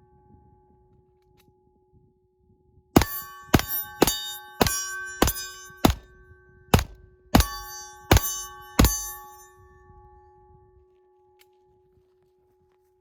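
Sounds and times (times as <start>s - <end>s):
pistol shots: 3.0s - 6.0s, 6.8s - 9.2s
metallic ringing: 3.0s - 11.6s.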